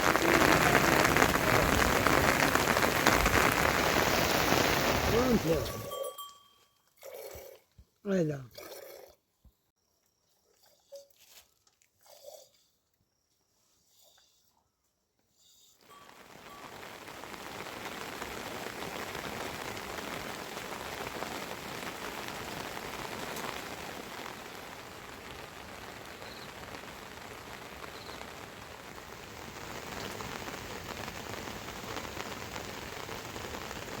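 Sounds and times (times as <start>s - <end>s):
steady rain falling: 0.0s - 6.0s, 15.8s - 34.0s.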